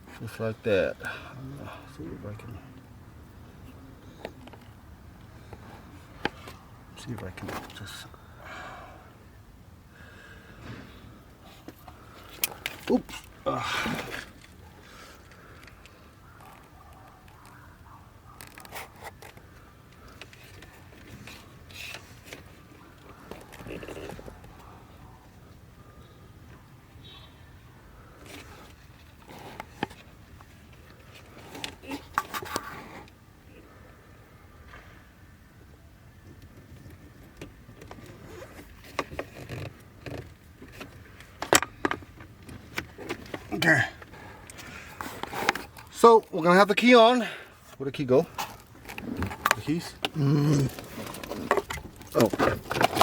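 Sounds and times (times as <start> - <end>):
rustle: 0.0 - 53.0
light clicks and rustling: 14.0 - 25.6
plastic and wire scraping: 18.3 - 25.0, 28.2 - 33.2, 36.7 - 47.0, 47.6 - 53.0.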